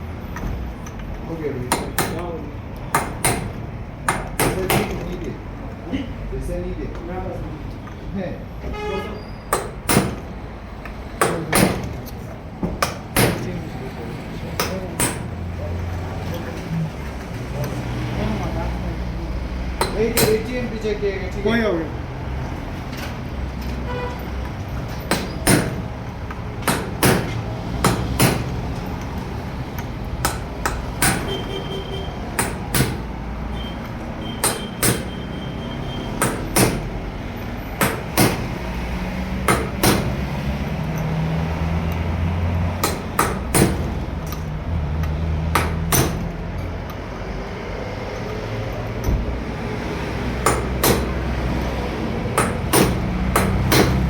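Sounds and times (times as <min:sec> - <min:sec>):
hand hammer striking: 0:01.6 - 0:05.2, 0:09.5 - 0:13.6, 0:14.6 - 0:15.4, 0:19.8 - 0:20.5, 0:24.9 - 0:29.1, 0:29.8 - 0:31.5, 0:32.3 - 0:33.1, 0:34.4 - 0:35.3, 0:36.2 - 0:37.0, 0:37.7 - 0:38.6, 0:39.4 - 0:40.4, 0:42.7 - 0:44.4, 0:45.5 - 0:46.3, 0:50.3 - 0:51.6, 0:52.3 - 0:54.0.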